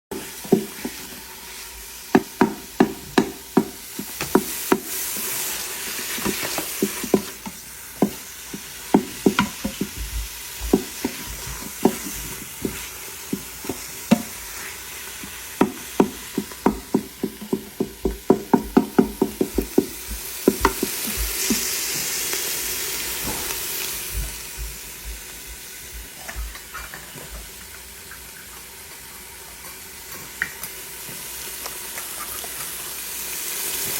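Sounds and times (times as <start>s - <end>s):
food sizzling: 0.1s - 33.9s
utensil scraping a cooking pan: 2.6s - 22.2s.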